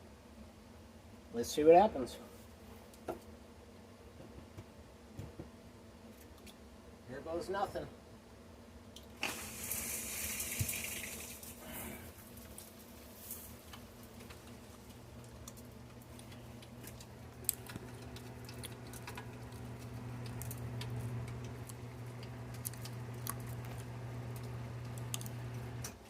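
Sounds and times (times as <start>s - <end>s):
electric motor humming: 15.8s - 25.9s.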